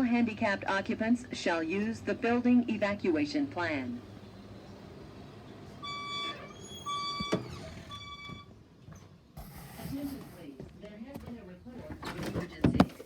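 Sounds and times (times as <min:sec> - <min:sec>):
fire alarm beeps: 0:05.8 - 0:08.5.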